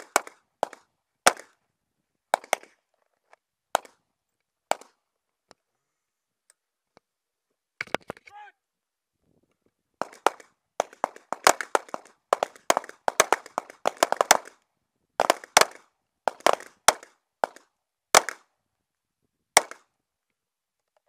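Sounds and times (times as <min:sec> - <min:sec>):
handgun shots: 0:10.0 - 0:14.5.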